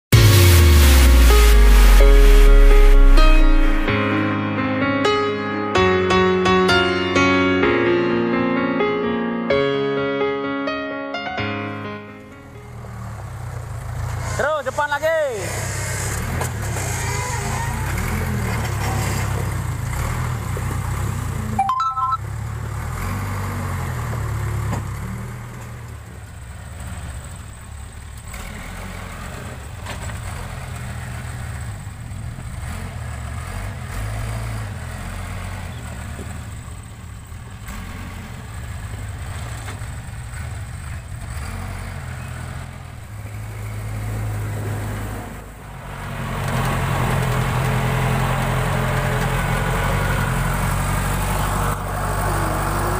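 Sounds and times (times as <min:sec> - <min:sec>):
backhoe diesel engine running: 0:11.8 - 0:52.9.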